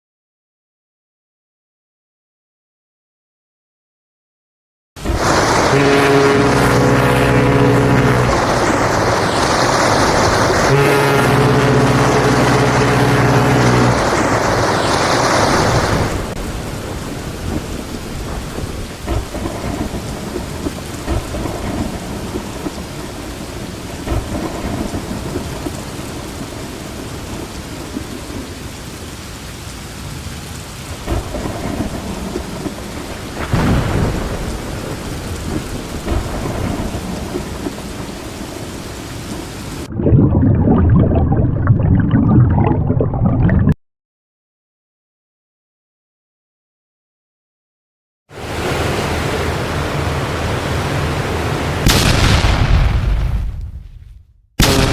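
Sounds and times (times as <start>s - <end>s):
steady rain: 5.0s - 39.9s, 48.3s - 52.6s, 54.6s - 54.9s
low rumbling thunder: 16.2s - 28.5s, 31.0s - 38.8s.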